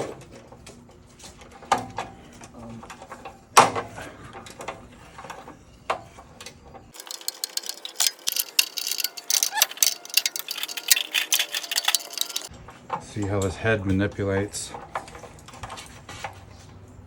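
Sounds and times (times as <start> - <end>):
metal tools knocking and clinking: 7.0 - 12.5
ratchet wrench clicking: 7.0 - 12.5.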